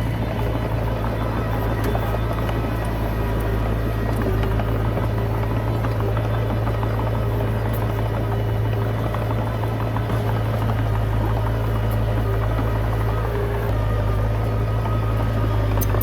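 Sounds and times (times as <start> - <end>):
bulldozer diesel engine running: 0.0 - 16.0.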